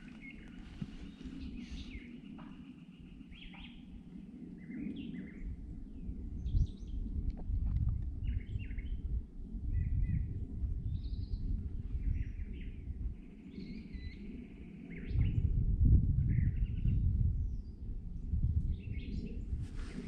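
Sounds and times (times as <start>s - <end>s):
songbirds chirping and trilling: 0.0s - 7.2s, 8.0s - 15.6s, 16.3s - 20.0s
wind rumbling on microphone: 0.0s - 20.0s.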